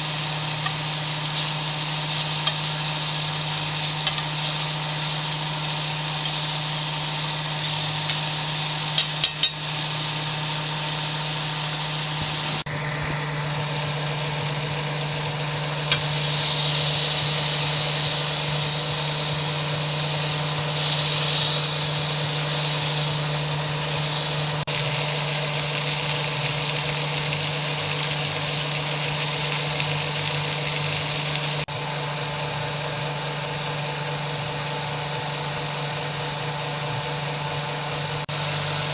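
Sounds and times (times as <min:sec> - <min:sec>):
meat sizzling in a frying pan: 0:00.0 - 0:38.9.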